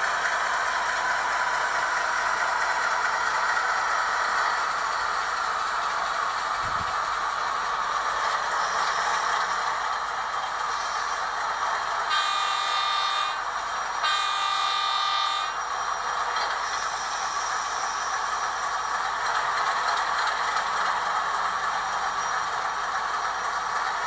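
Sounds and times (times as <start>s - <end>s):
diesel engine running through small speaker: 0.0s - 24.0s
train horn blasts: 12.1s - 15.6s.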